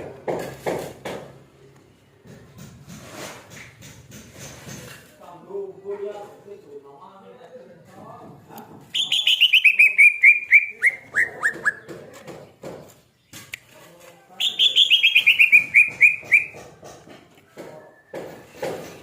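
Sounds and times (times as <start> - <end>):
bird singing rapid falling notes: 8.9 - 11.9, 14.4 - 16.6.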